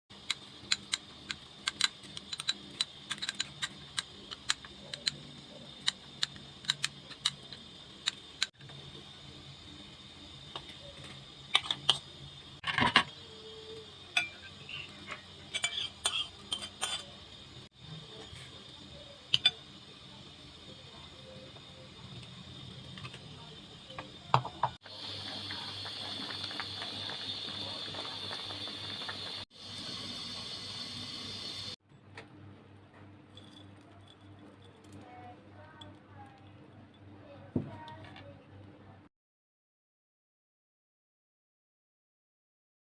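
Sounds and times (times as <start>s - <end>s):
utensils and cookware clattering: 10.8s - 13.4s, 14.0s - 17.4s.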